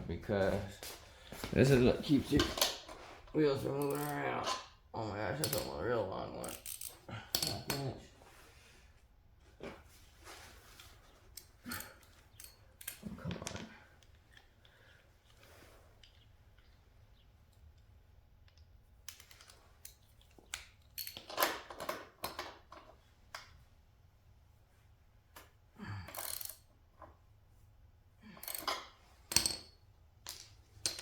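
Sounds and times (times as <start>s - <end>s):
hand tools clicking on metal: 3.7s - 4.7s, 5.4s - 5.8s, 6.4s - 7.9s, 26.0s - 26.7s, 28.4s - 29.7s.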